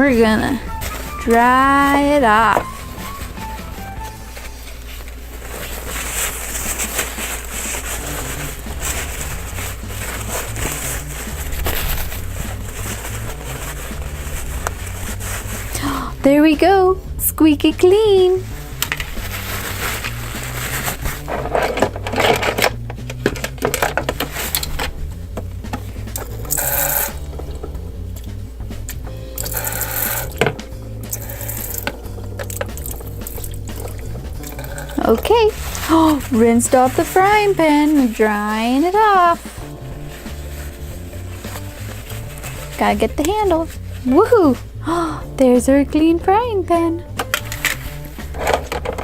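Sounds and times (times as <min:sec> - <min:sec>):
towel rubbing wet toy: 0:00.0 - 0:44.9
plastic toy dishes clattering: 0:21.3 - 0:24.9, 0:47.2 - 0:49.0
water running from toy sink: 0:26.2 - 0:27.6, 0:29.4 - 0:30.5, 0:31.1 - 0:35.0.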